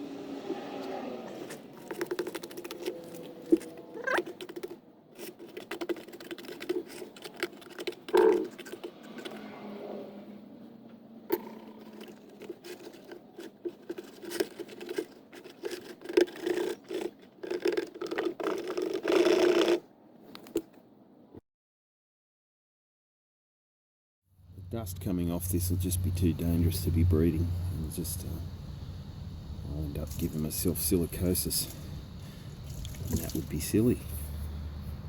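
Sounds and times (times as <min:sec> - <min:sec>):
hand tool scraping ceramic: 0:01.2 - 0:09.5, 0:11.6 - 0:19.8.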